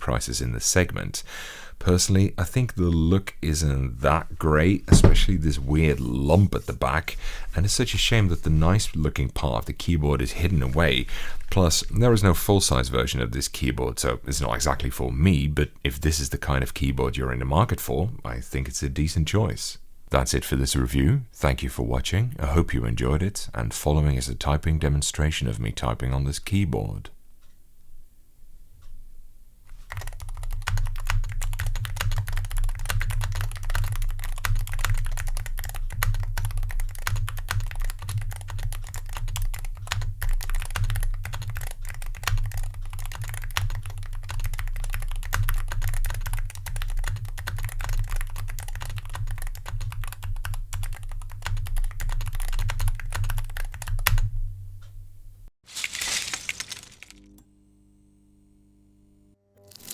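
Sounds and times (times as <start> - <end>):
fast keyboard typing: 29.9 - 54.2.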